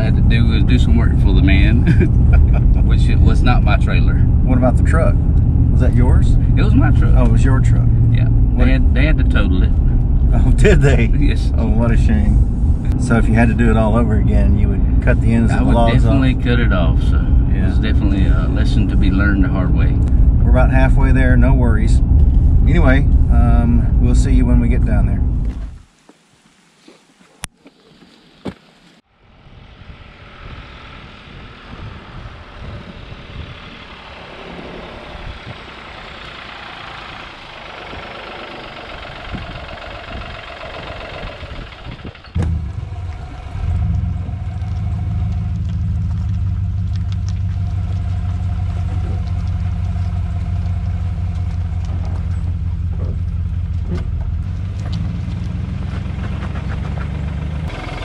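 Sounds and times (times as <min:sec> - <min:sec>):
truck road and engine noise: 0:00.0 - 0:58.0
low engine idle: 0:29.2 - 0:54.9.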